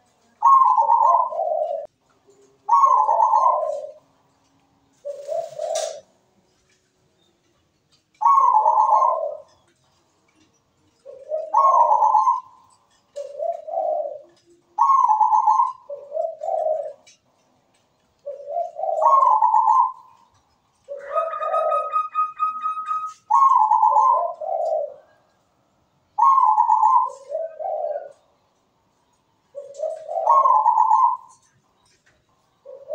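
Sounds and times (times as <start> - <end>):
dove cooing: 0.2 - 4.2, 5.0 - 6.1, 8.2 - 9.7, 11.0 - 17.2, 18.2 - 25.3, 26.2 - 28.3, 29.5 - 31.6, 32.6 - 32.9.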